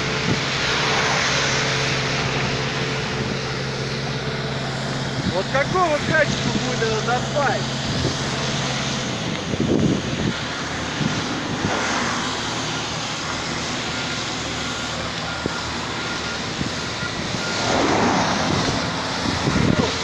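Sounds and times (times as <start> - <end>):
construction machinery engine running: 0.0 - 20.0
reversing alarm beeps: 13.8 - 20.0.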